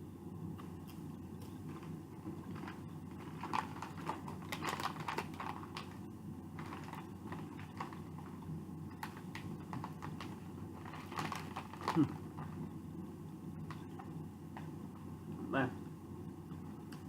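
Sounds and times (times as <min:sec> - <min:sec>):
steady low hum: 0:00.0 - 0:17.0
chips crunching: 0:00.8 - 0:06.0, 0:09.0 - 0:12.5.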